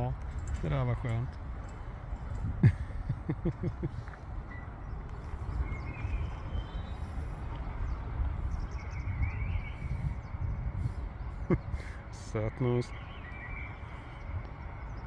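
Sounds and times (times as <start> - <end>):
low rumbling noise: 0.0 - 15.0
faint bird chirps: 4.5 - 11.7, 12.6 - 15.0.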